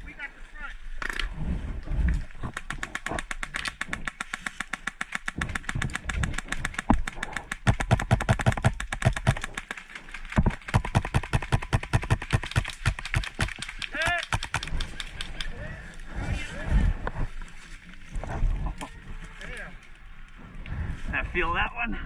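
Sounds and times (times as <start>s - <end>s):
airsoft guns firing full auto: 2.6s - 9.8s, 10.5s - 15.2s.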